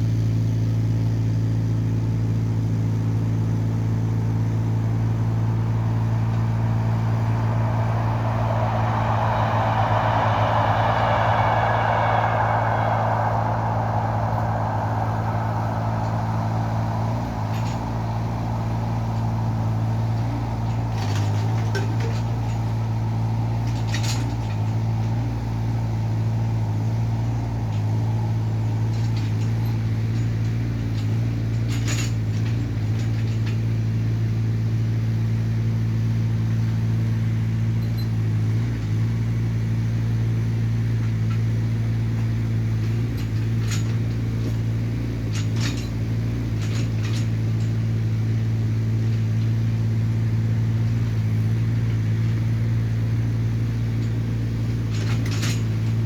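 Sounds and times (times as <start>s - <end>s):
excavator diesel engine running: 3.3s - 31.5s.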